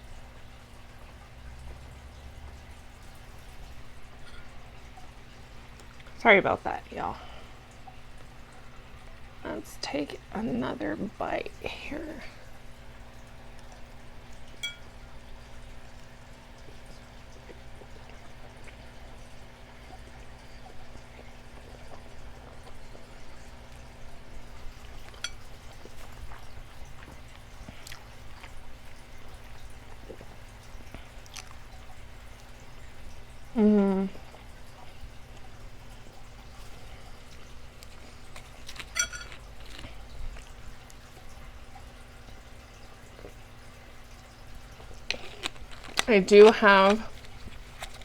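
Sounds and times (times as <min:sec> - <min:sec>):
soft chewing: 0:01.0 - 0:06.2, 0:11.7 - 0:48.0
person chewing: 0:24.5 - 0:31.8, 0:36.6 - 0:41.2, 0:44.7 - 0:48.0.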